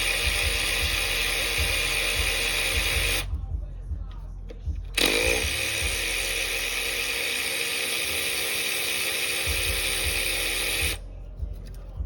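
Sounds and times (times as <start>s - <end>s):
small power tool motor whirring: 0.0s - 3.3s, 5.0s - 11.0s.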